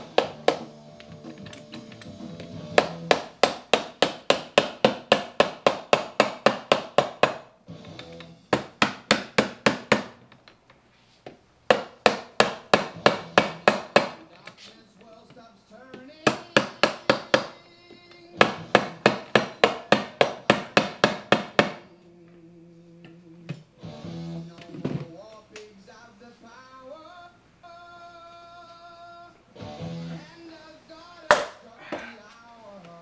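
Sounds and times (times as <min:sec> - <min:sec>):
hammer tapping on metal parts: 0:00.0 - 0:10.7, 0:11.3 - 0:14.6, 0:15.3 - 0:21.8, 0:31.3 - 0:32.1.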